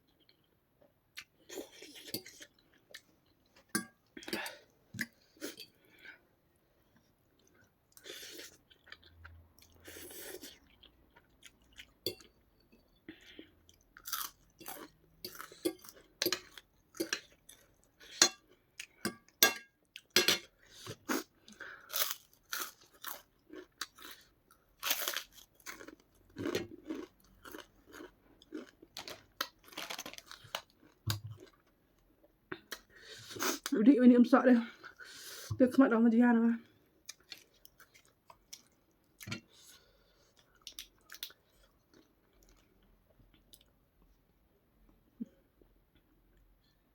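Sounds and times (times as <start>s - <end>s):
person crunching crisp food: 14.0s - 17.0s, 21.0s - 31.6s.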